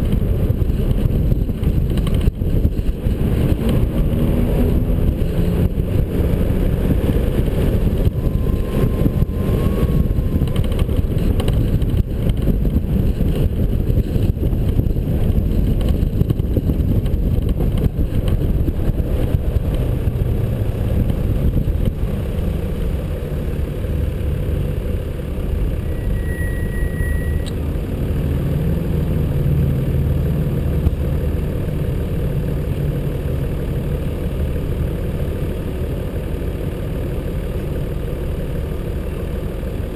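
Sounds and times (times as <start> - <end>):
vehicle engine and road noise: 0.0 - 39.9
brief high tone: 7.9 - 11.3, 25.8 - 27.6.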